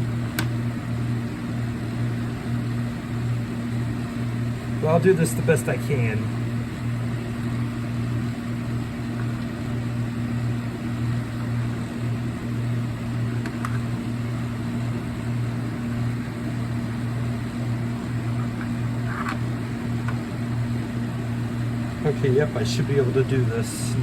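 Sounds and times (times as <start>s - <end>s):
appliance fan hum: 0.0s - 24.0s.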